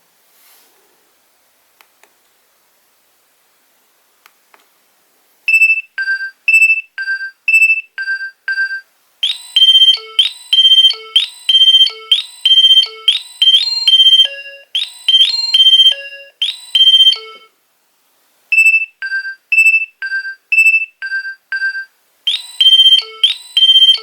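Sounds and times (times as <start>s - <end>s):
mobile phone ringtone melodies: 8.0s - 17.5s, 19.0s - 24.0s.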